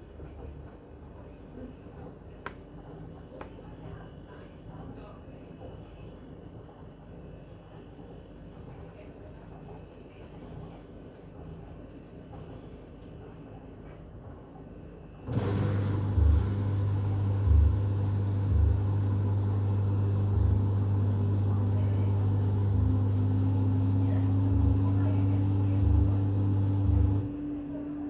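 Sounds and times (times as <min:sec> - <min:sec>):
washing machine motor hum: 0:14.8 - 0:28.0.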